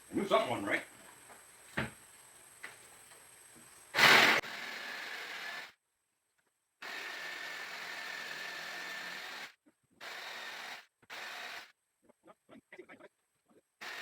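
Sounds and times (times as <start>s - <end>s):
power tool cutting plywood: 4.0s - 5.7s, 6.8s - 11.7s.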